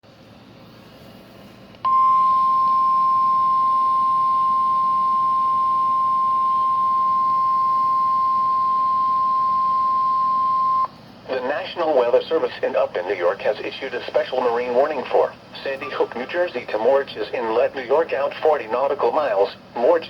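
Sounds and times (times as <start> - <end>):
loud steady warning beep: 1.8 - 10.9.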